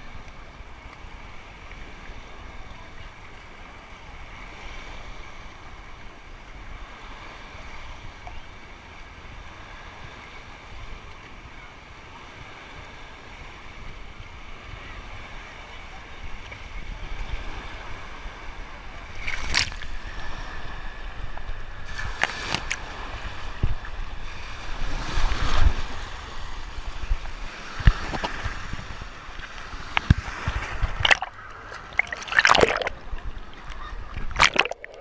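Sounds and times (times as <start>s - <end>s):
water noise: 13.6s - 35.0s
wind noise on microphone: 16.2s - 35.0s.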